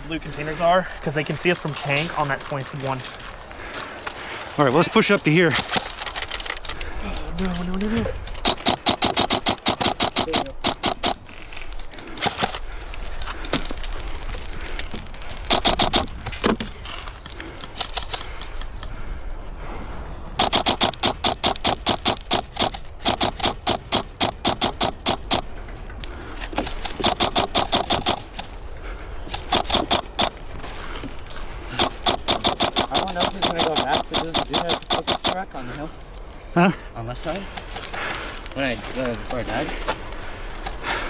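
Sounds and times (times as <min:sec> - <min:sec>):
airsoft rifle full-auto bursts: 0:08.4 - 0:11.4, 0:12.2 - 0:12.6, 0:15.5 - 0:16.3, 0:20.4 - 0:25.5, 0:26.7 - 0:28.5, 0:29.4 - 0:30.6, 0:31.7 - 0:35.4.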